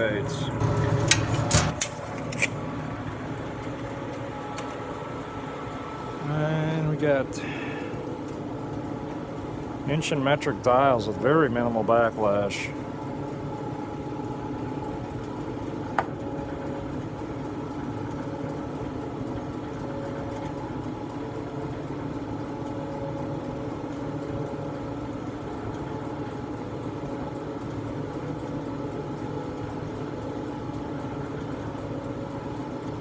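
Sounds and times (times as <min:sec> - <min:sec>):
machine motor hum: 0:00.0 - 0:33.0
sharp click: 0:00.9 - 0:02.6.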